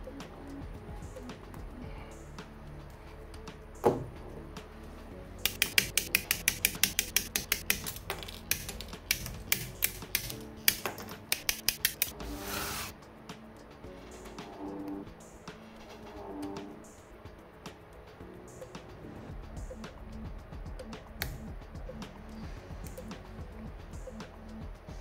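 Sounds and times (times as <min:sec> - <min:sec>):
background music: 0:00.0 - 0:25.0
sharp plastic clicks: 0:05.4 - 0:12.1.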